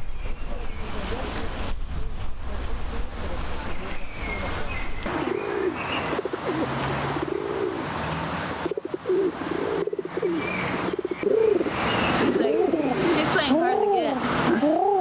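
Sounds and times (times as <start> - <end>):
small birds chirping: 3.6 - 7.0
pigeons cooing: 4.8 - 7.9, 8.6 - 15.0.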